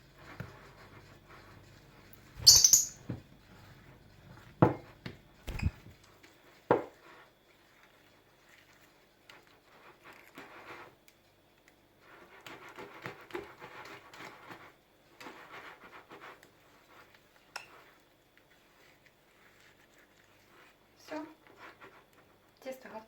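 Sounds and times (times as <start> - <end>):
whisk scraping a bowl: 5.8 - 11.2, 11.8 - 22.6.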